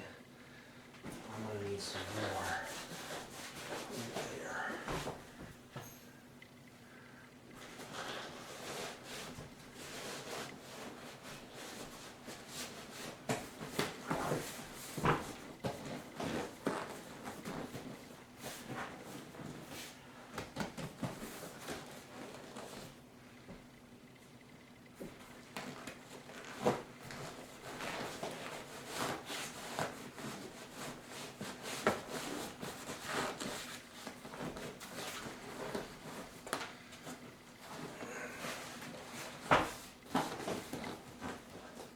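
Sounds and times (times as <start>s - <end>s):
hands rubbing a seat cover: 7.8s - 20.0s.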